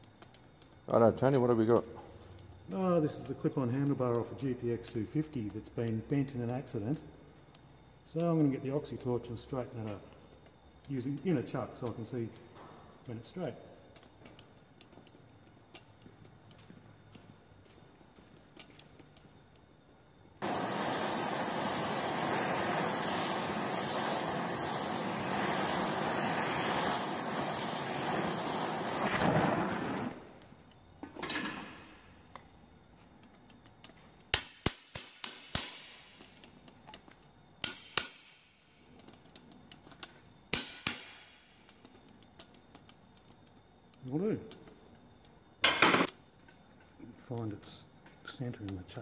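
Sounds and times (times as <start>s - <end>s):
torch flame hissing: 20.4s - 30.5s.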